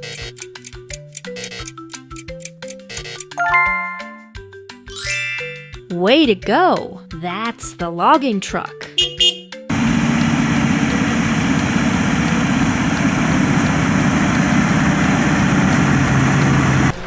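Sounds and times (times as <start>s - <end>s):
truck engine running: 9.2s - 17.0s.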